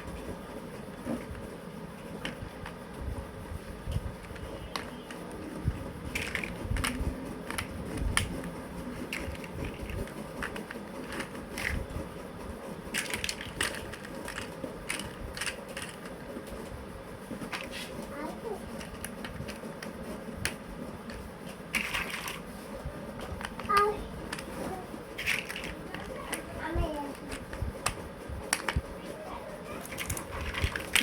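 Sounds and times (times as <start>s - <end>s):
plastic building blocks clicking: 4.2s - 5.4s, 6.0s - 11.9s, 12.9s - 16.2s, 18.6s - 22.5s, 23.3s - 24.6s, 25.2s - 29.0s, 29.8s - 31.0s.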